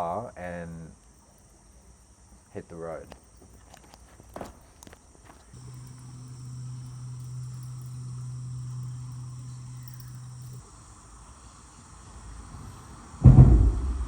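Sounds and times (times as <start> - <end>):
insects chirping: 0.0 - 14.0
low hum: 5.6 - 14.0.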